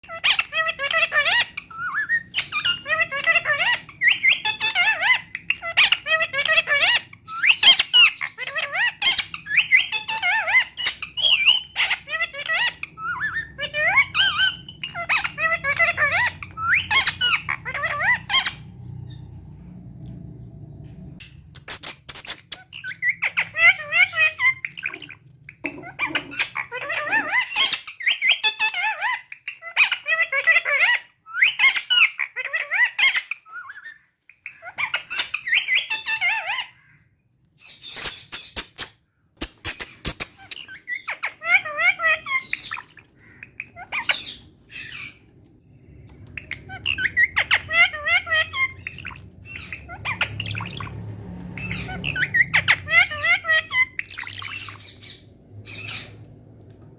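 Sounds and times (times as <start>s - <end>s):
parakeet chattering and squawking: 0.0s - 56.9s
sharp clicks: 21.5s - 22.8s, 38.0s - 40.7s.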